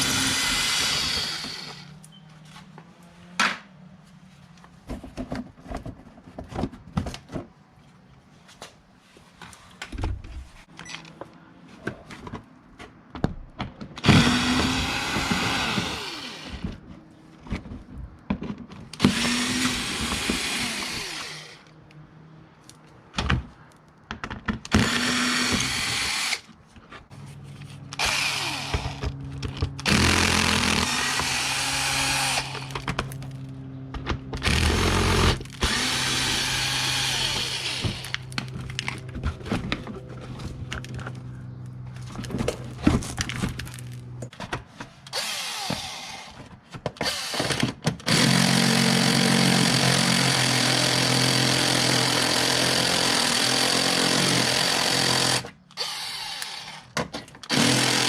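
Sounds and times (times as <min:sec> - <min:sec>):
handheld power tool running: 0:00.0 - 0:01.9, 0:14.0 - 0:16.6, 0:19.0 - 0:21.7, 0:24.7 - 0:26.5, 0:27.9 - 0:29.2, 0:29.8 - 0:32.9, 0:34.4 - 0:39.0, 0:45.1 - 0:46.4, 0:47.0 - 0:58.0.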